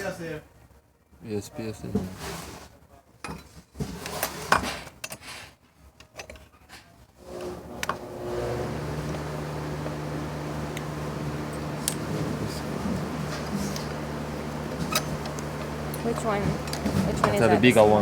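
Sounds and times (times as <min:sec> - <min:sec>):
steady mechanical hum: 0:07.0 - 0:18.0.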